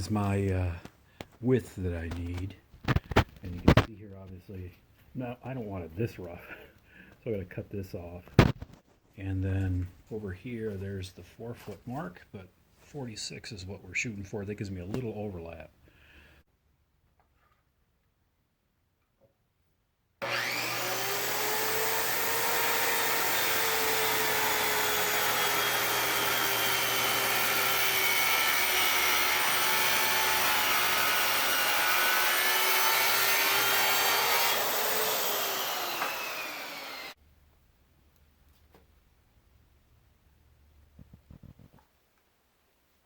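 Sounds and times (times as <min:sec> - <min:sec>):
circular saw cutting wood: 0:20.2 - 0:37.2.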